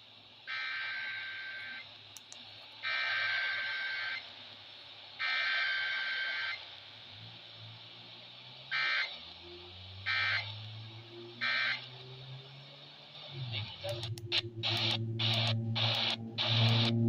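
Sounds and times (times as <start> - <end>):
harsh buzzing digital data bursts: 0.5 - 1.9, 2.8 - 4.3, 5.2 - 6.7, 8.7 - 10.6, 11.4 - 12.0.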